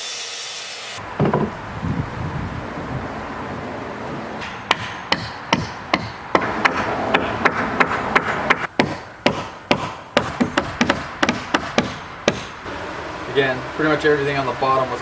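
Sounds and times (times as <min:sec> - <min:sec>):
hammer striking wood: 0:01.2 - 0:01.6, 0:04.4 - 0:12.6.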